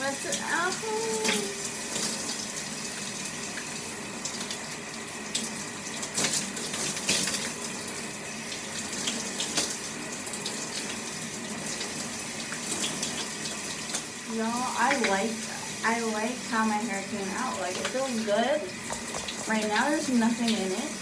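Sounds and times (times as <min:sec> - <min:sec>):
water running over hair: 0:00.0 - 0:21.0
water splashes: 0:14.3 - 0:21.0.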